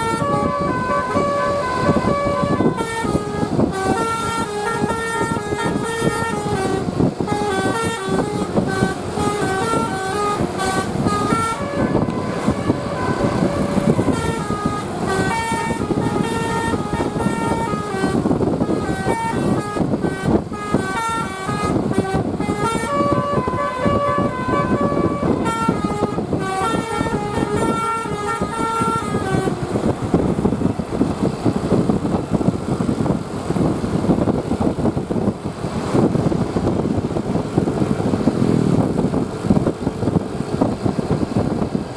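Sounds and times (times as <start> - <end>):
multi-trumpet air horn tune: 0.0 - 29.9
bus engine noise: 0.0 - 41.9.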